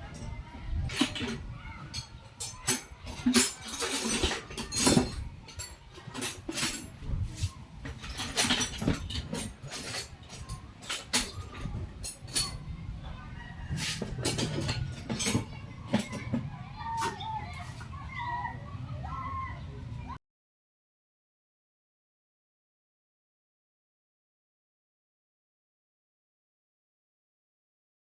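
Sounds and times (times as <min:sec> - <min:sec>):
metal clinking: 0:08.0 - 0:12.6.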